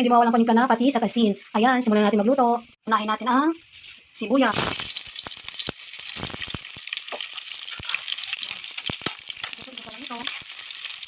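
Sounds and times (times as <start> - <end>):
onion sizzling in oil: 2.9 - 11.0.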